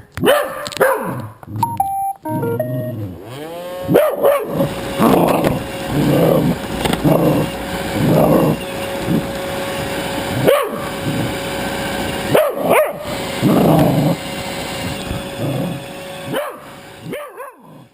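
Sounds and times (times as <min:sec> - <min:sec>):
dog yipping: 0:00.2 - 0:01.2, 0:03.9 - 0:04.7, 0:10.4 - 0:10.9, 0:12.3 - 0:13.1, 0:16.3 - 0:17.8
dog barking and growling: 0:00.2 - 0:01.4, 0:03.8 - 0:09.3, 0:10.3 - 0:11.5, 0:12.2 - 0:14.2, 0:15.4 - 0:17.9.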